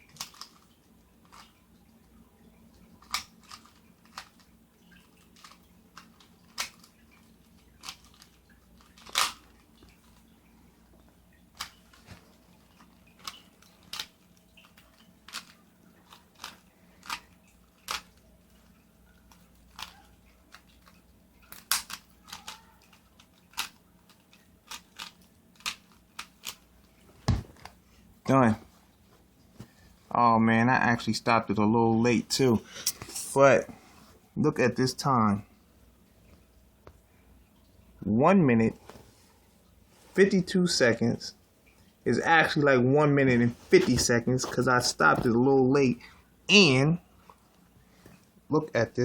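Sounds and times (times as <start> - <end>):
puzzle cube plastic clicks: 7.8 - 9.6, 12.8 - 18.2, 20.5 - 26.6.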